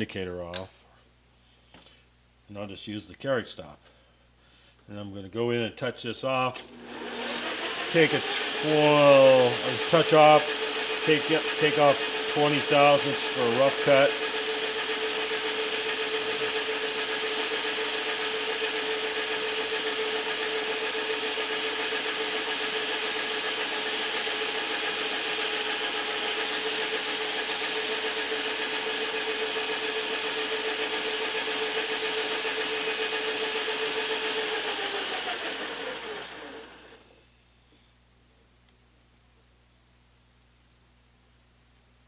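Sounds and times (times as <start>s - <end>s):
metal lathe running: 6.6s - 37.0s
lathe spindle spinning down: 6.6s - 37.1s.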